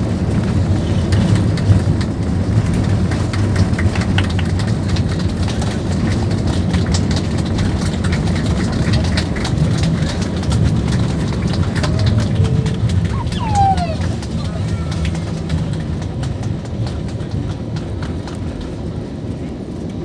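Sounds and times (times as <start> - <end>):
low rumble of wheels and engines: 0.0 - 20.0.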